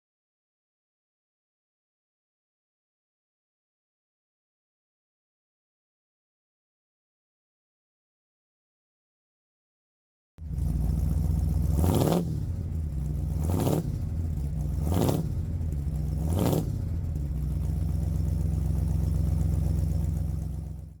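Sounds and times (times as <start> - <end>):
engine idling: 10.4 - 21.0
engine revving: 10.4 - 21.0.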